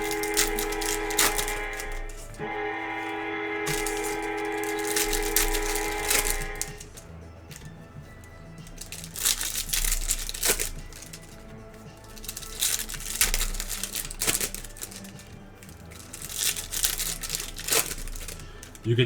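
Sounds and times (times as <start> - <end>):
background music: 0.0 - 19.0
foil wrappers crinkling and tearing: 0.0 - 19.0.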